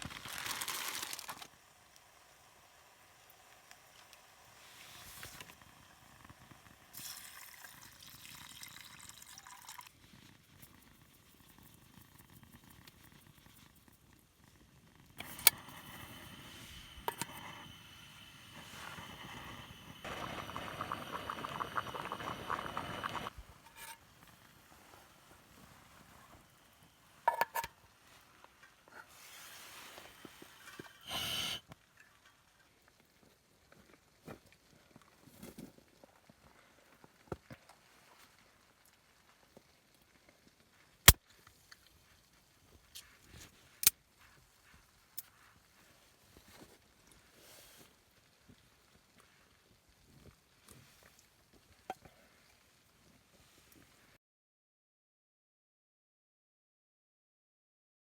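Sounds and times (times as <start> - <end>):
water pouring into container: 6.9 - 10.0, 15.2 - 23.4
soft hiss: 15.2 - 32.8.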